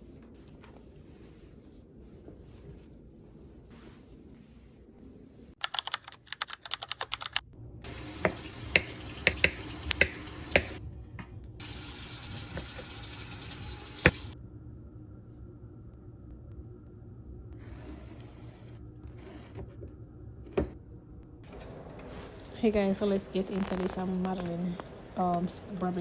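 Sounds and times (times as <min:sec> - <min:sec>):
running water: 0:07.9 - 0:10.8, 0:11.6 - 0:14.4.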